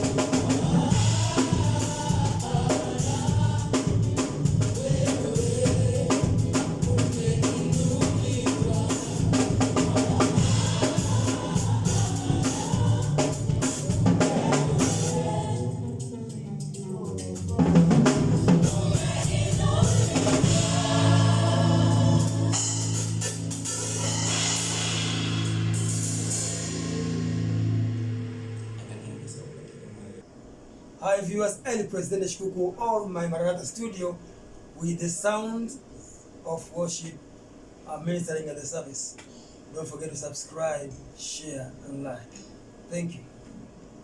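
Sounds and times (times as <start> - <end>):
group of singers: 0.0 - 25.0
drum kit: 0.0 - 29.1.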